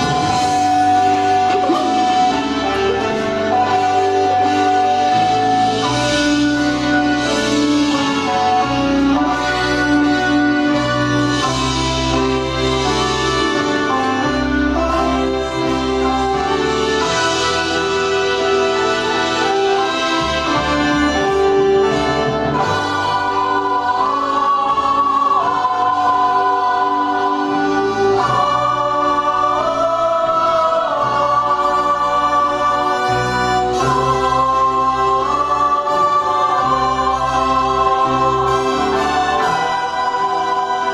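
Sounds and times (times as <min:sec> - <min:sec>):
person singing: 0:00.0 - 0:04.9
instrumental accompaniment: 0:00.0 - 0:40.9.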